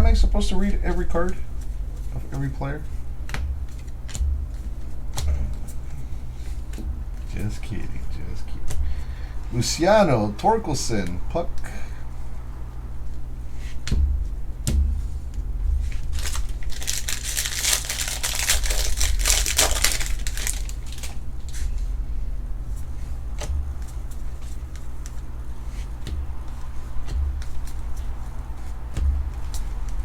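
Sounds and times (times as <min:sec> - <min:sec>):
cards clicking and bumping: 0:15.9 - 0:21.7
foil wrapper tearing and crinkling: 0:16.0 - 0:21.6.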